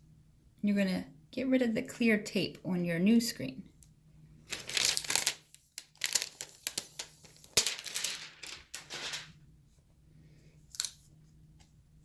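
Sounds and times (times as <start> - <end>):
plastic film peeling and crinkling: 4.5 - 9.4.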